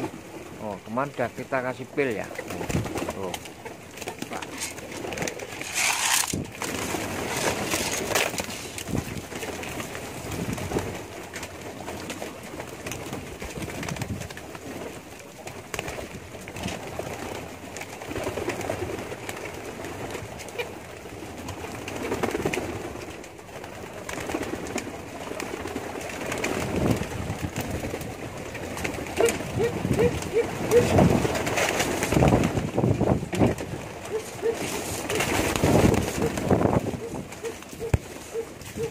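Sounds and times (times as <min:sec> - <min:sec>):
rustling burst: 0:04.2 - 0:09.0
pigeons cooing: 0:28.2 - 0:31.8, 0:33.6 - 0:38.9.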